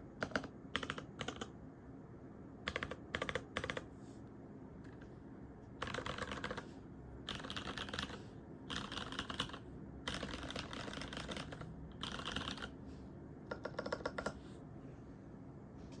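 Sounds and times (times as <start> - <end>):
mechanical keyboard typing: 0.2 - 1.6, 2.6 - 3.9, 5.8 - 6.6, 7.2 - 12.8, 13.4 - 14.4.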